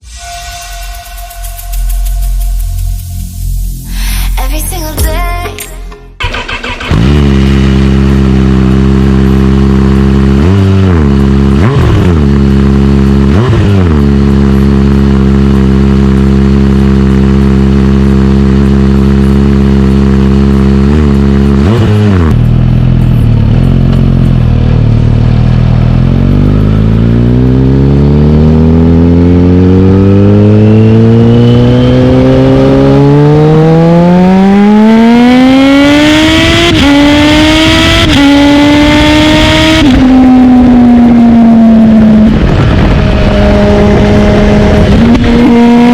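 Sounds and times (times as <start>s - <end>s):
motorcycle engine revving and accelerating: 6.2s - 45.9s.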